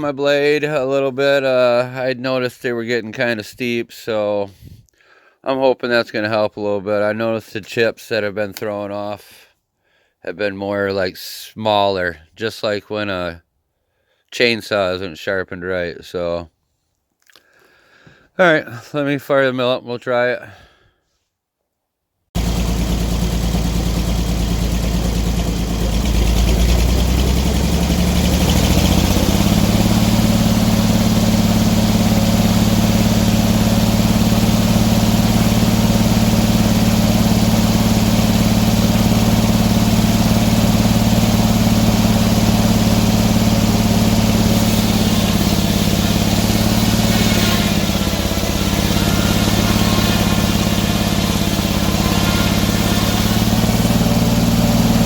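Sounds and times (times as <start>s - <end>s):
sawmill engine revving: 22.4s - 55.0s.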